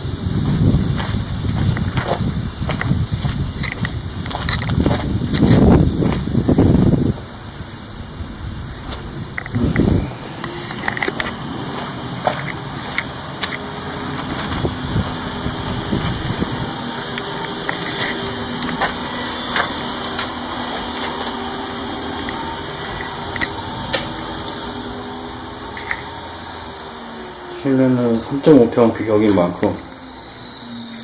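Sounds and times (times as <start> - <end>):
mechanical hum: 0.0 - 31.0.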